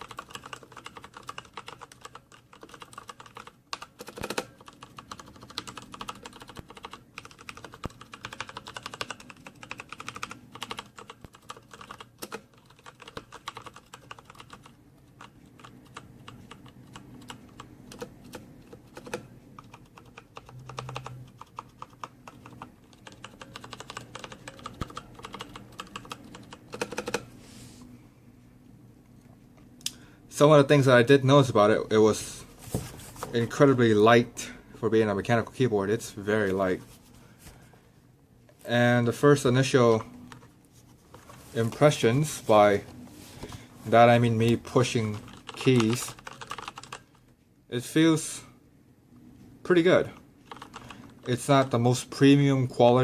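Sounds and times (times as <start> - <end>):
mechanical keyboard typing: 0.0 - 27.3, 44.5 - 47.2, 50.1 - 51.8.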